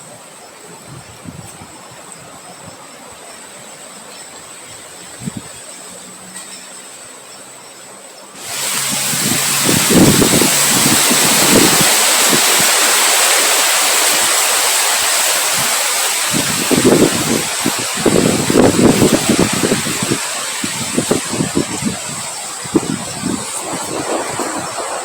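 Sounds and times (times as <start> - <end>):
wind gusts buffeting microphone: 0.8 - 2.8, 4.8 - 5.6, 8.4 - 25.0
heavy rain: 8.4 - 25.0.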